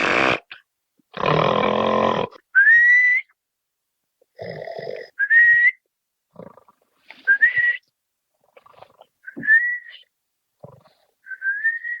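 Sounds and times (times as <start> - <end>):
snoring snorts: 1.2 - 2.4, 4.4 - 5.1, 6.4 - 6.8, 10.6 - 11.1.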